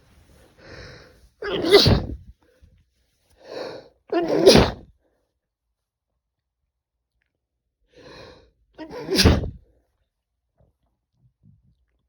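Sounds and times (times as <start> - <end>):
man sneezing: 1.4 - 2.2, 4.1 - 4.9, 8.8 - 9.6.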